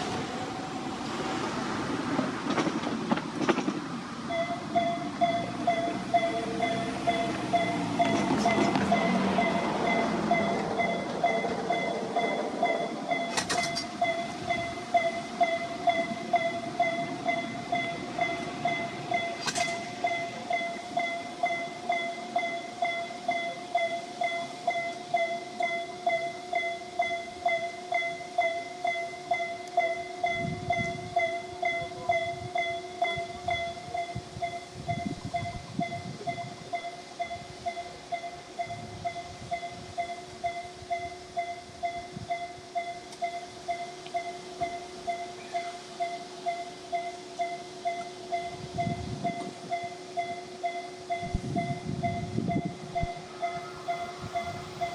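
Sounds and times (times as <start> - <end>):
passing train rumble: 0.0 - 54.9
level crossing warning bell: 4.2 - 54.9.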